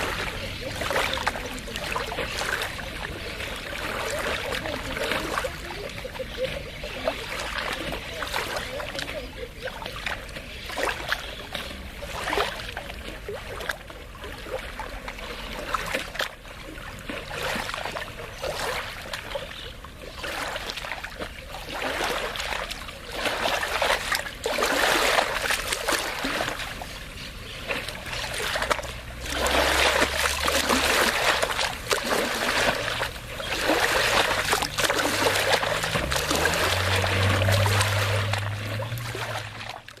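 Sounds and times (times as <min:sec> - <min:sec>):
water lapping at the shore: 0:00.0 - 0:40.0
low motor hum: 0:26.2 - 0:40.0.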